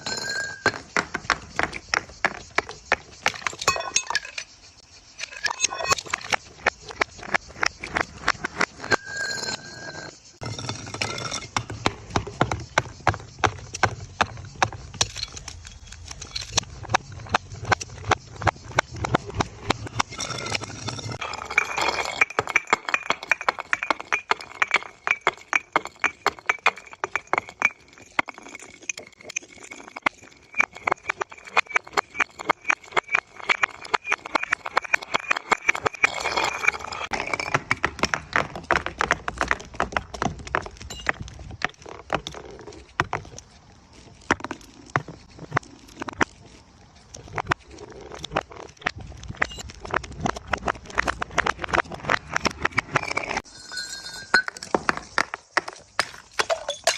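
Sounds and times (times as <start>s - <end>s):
high ringing tone: 0.0s - 0.8s, 8.9s - 10.4s, 53.4s - 54.7s
glass bottles breaking: 3.2s - 4.5s, 53.4s - 55.3s, 56.0s - 56.9s.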